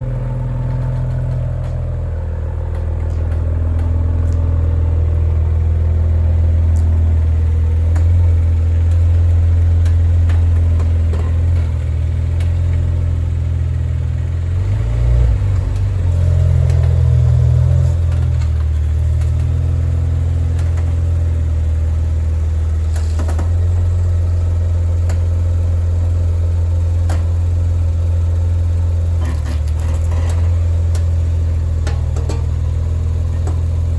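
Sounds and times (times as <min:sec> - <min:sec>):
low engine hum: 0:00.0 - 0:33.9
cracking popping clicks: 0:02.6 - 0:04.5.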